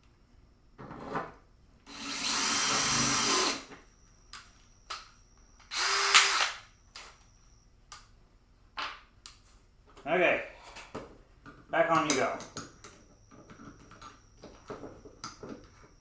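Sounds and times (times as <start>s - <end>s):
power drill driving screws: 1.9s - 3.7s, 5.7s - 6.7s.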